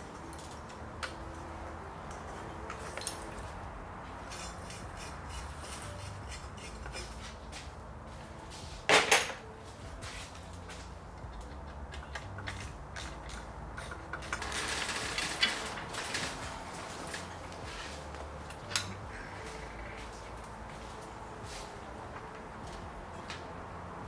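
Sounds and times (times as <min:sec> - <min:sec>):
metal tools clinking on engine: 0:00.0 - 0:07.7, 0:08.9 - 0:23.5.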